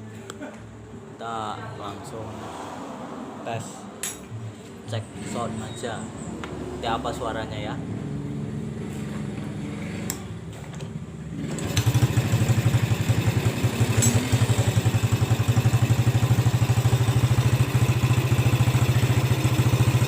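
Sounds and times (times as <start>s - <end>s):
motorcycle engine starting and idling: 8.4s - 20.0s.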